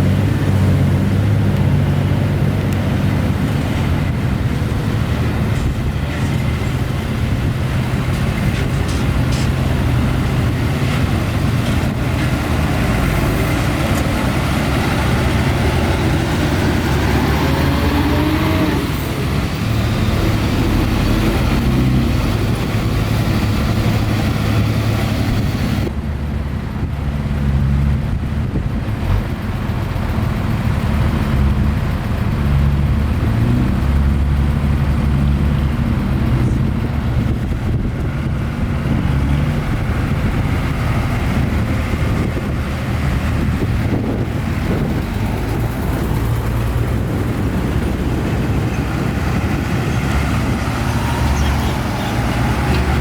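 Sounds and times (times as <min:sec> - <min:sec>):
heavy diesel engine running: 0:00.0 - 0:53.0.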